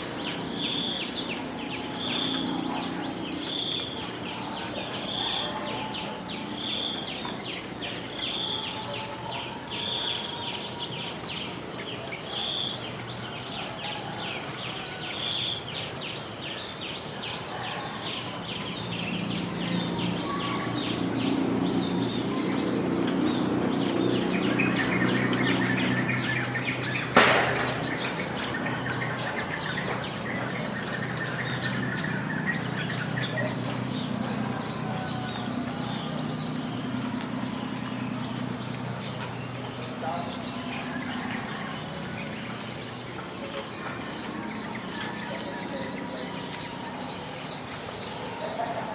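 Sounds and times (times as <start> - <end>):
insects chirring: 18.0 - 48.9
bird calling: 19.4 - 42.2
sharp knock: 27.2 - 28.2.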